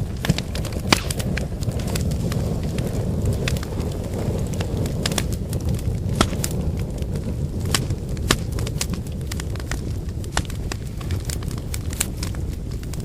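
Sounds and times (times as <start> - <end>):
burning wood crackling: 0.0 - 13.0
low rumble of flames: 0.0 - 13.0.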